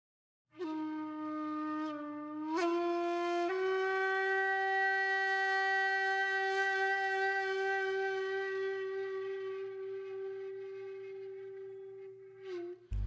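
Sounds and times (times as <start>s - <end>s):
reedy wind instrument note: 3.4s - 13.0s.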